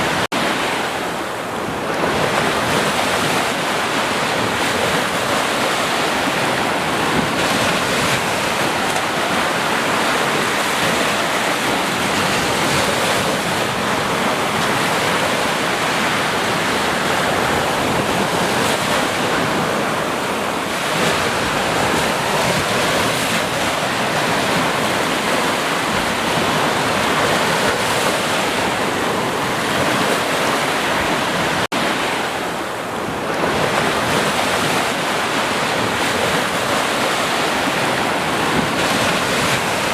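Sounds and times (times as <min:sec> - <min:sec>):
sea surf waves breaking: 0:00.0 - 0:39.9.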